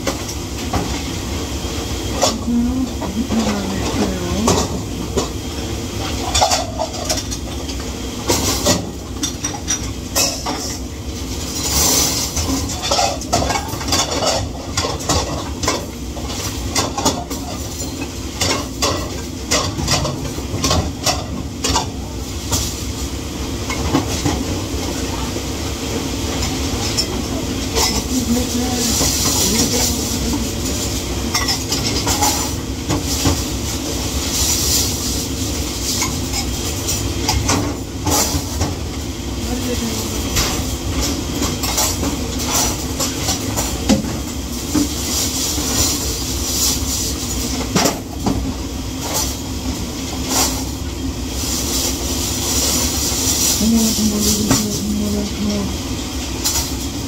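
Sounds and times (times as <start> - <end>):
dishes and cutlery clattering: 6.1 - 7.4.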